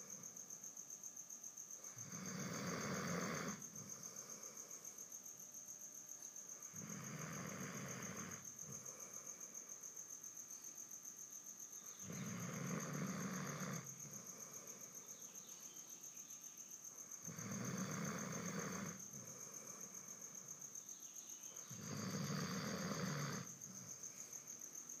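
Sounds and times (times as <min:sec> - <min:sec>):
pet snoring: 0:01.8 - 0:04.7, 0:06.6 - 0:09.4, 0:12.0 - 0:14.9, 0:17.1 - 0:20.5, 0:21.6 - 0:24.1.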